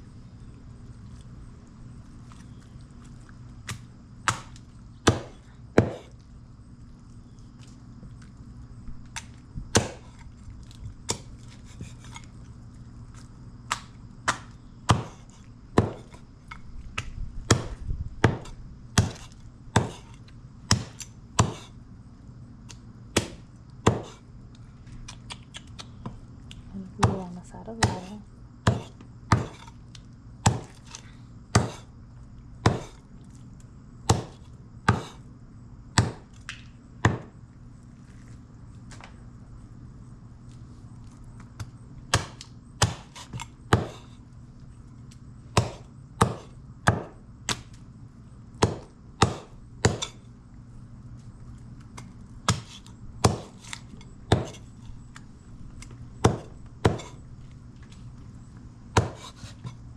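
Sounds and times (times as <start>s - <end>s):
knife chopping on wooden board: 4.3s - 6.1s, 9.7s - 10.1s, 13.7s - 16.2s, 17.5s - 21.7s, 23.2s - 24.2s, 27.8s - 29.7s, 30.4s - 31.9s, 32.6s - 33.0s, 34.1s - 35.2s, 36.0s - 36.3s, 37.0s - 37.3s, 42.1s - 44.1s, 45.6s - 47.6s, 48.6s - 50.2s, 52.5s - 54.6s, 56.2s - 57.2s, 59.0s - 59.8s.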